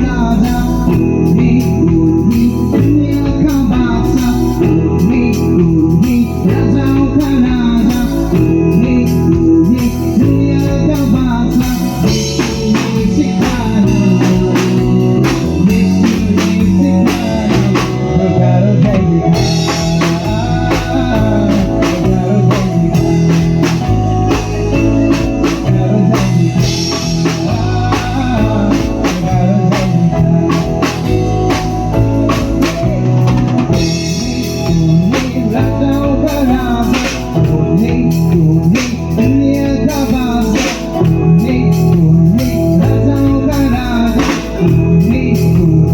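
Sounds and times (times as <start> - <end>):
band playing: 0.0 - 45.9
drums steady beat: 0.0 - 45.9.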